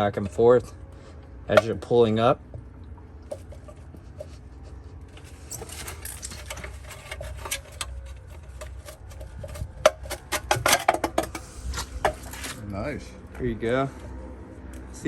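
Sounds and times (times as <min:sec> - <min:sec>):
plastic scraping and clicking: 0:05.1 - 0:12.6.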